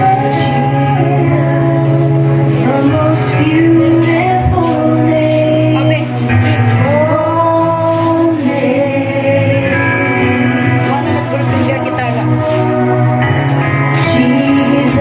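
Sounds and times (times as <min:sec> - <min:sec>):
worship song with singing: 0:00.0 - 0:15.0.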